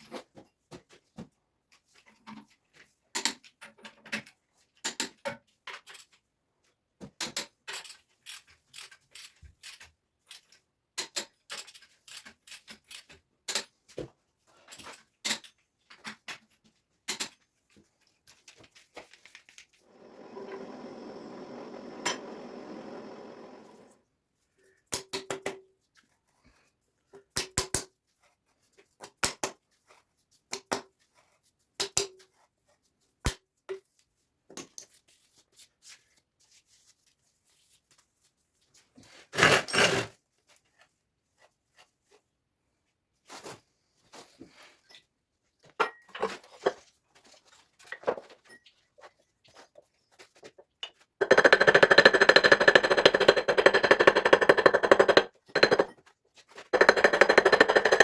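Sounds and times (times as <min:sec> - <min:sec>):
power tool rattling fast: 0:51.2 - 0:55.9, 0:56.7 - 0:58.0.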